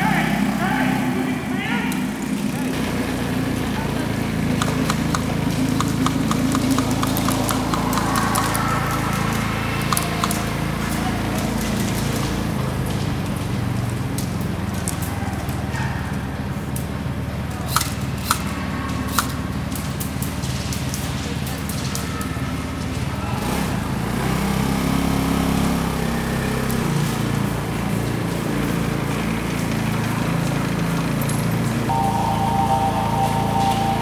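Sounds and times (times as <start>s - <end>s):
engine running: 0.0s - 14.8s, 23.4s - 34.0s
loud cracks: 4.4s - 15.1s
sharp clicks: 4.5s - 10.5s.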